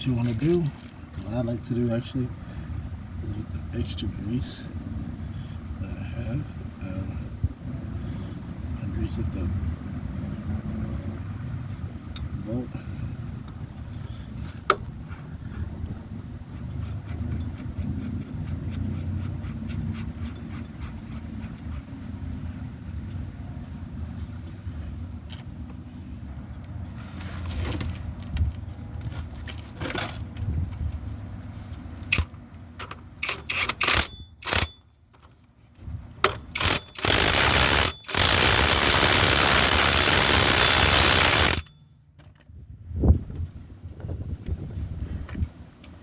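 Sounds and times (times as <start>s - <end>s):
metal tools clinking: 29.7s - 30.4s, 32.1s - 34.8s, 36.3s - 42.4s, 45.2s - 45.8s.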